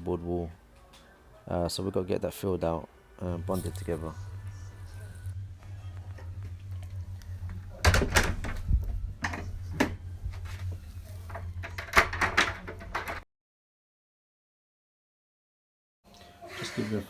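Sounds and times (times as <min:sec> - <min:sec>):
low steady hum: 0:02.8 - 0:13.2.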